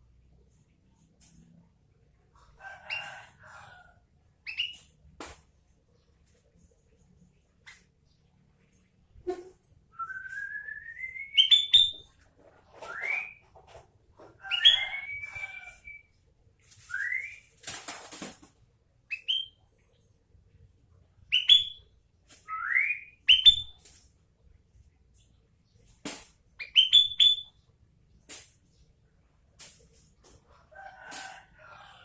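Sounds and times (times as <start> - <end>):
bird whistling calls: 9.3 - 12.0.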